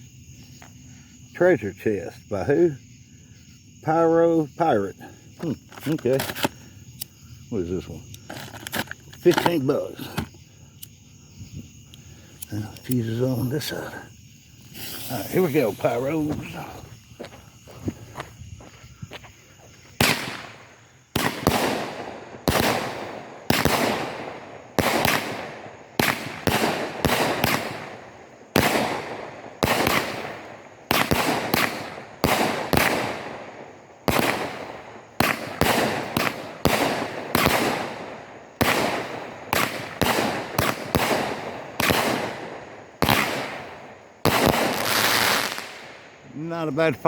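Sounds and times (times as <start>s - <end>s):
fuse burning: 14.6s - 16.2s
firework shots with crackling tails: 14.6s - 16.8s, 20.0s - 46.2s.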